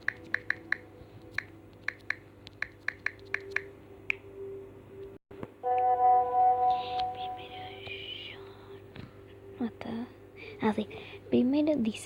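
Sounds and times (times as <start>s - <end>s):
fingers tapping on touchscreen: 0.0s - 4.2s.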